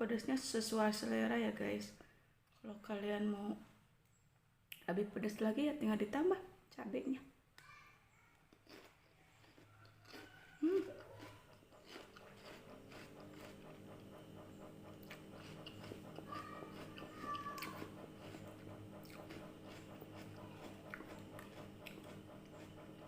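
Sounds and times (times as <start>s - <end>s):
crunchy chewing of fruit: 8.3s - 23.0s.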